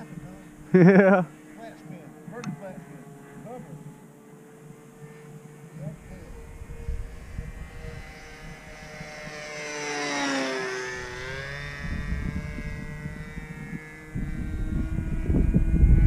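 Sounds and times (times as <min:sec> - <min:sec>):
model airplane motor whining: 0:00.0 - 0:16.0
wind buffeting microphone: 0:05.9 - 0:09.6, 0:10.9 - 0:16.0.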